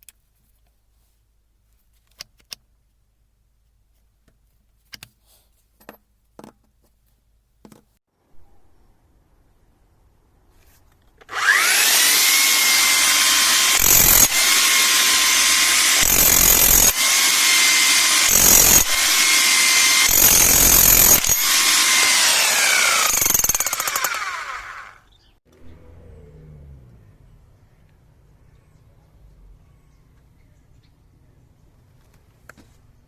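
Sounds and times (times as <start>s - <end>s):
rotary hammer motor whining: 11.3s - 25.0s.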